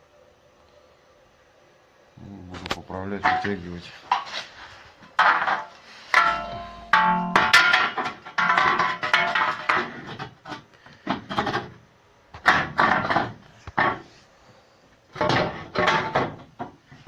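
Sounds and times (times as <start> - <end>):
metal knocking and clattering: 5.2 - 11.8, 15.2 - 16.8.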